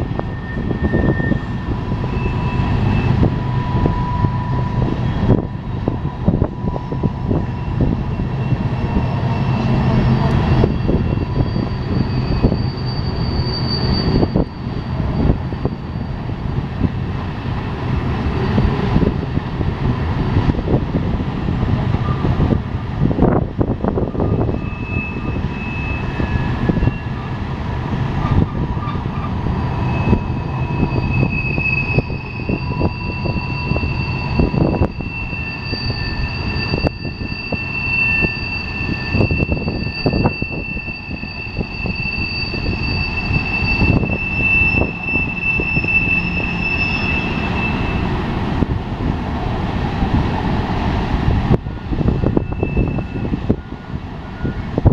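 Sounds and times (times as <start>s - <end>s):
wheel flange squeals: 0.0s - 19.4s, 24.0s - 49.2s, 51.9s - 54.9s
train wheels rumbling on rail: 0.0s - 54.9s.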